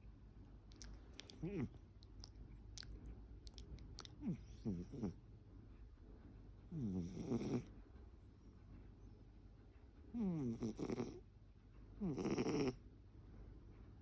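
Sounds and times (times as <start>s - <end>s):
cat snoring: 4.3s - 5.2s, 6.7s - 7.7s, 10.2s - 11.2s, 12.0s - 12.8s.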